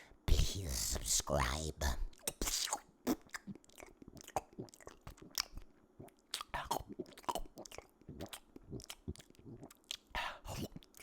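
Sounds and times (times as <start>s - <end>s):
mouth clicks and pops: 2.2s - 11.0s.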